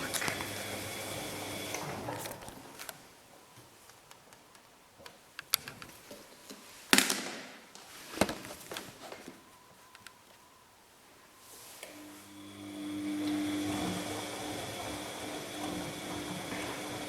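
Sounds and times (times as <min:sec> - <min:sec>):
washing machine drum tumbling laundry: 0:00.0 - 0:02.8, 0:12.0 - 0:17.0.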